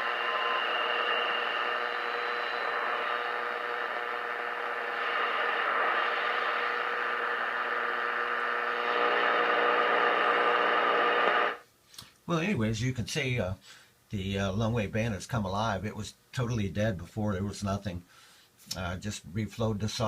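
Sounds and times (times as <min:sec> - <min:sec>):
faint steady radio tones: 0:00.0 - 0:11.6
radio static and hiss: 0:00.0 - 0:11.6.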